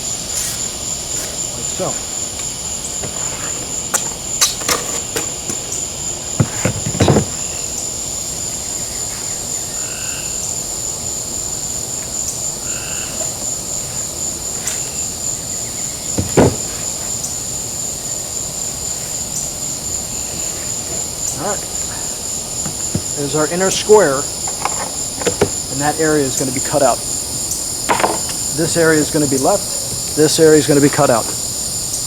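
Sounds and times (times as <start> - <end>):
night insects trilling: 0.0 - 32.0
frog calls: 1.2 - 32.0
knocks on styrofoam: 6.4 - 7.4, 16.2 - 16.9, 27.9 - 28.3.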